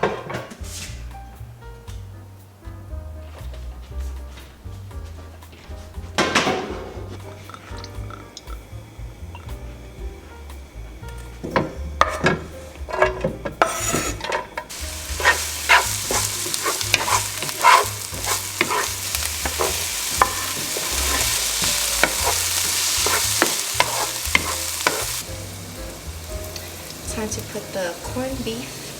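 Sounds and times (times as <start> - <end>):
food sizzling in hot oil: 5.5 - 28.9
utensil knocking against pan: 6.1 - 8.7, 11.4 - 25.3
spatula scraping pan: 11.6 - 25.6.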